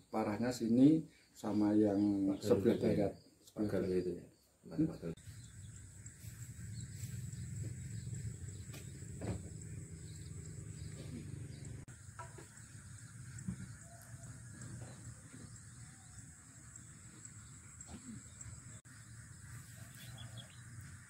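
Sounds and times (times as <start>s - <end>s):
high-pitched insect drone: 5.2s - 20.2s.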